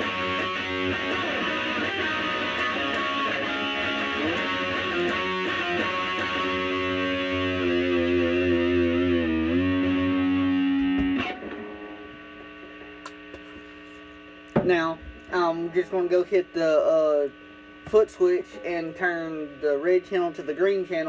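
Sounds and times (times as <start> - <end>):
amp hum: 0.0 - 21.0
distorted electric guitar: 0.0 - 21.0.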